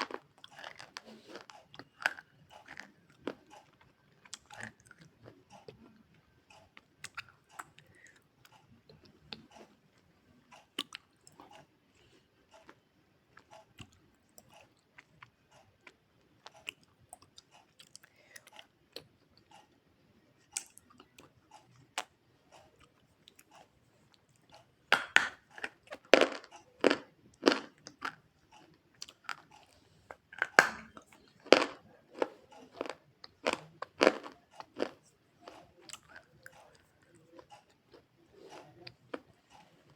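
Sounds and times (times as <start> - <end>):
chewing crunchy food: 0.0 - 39.9.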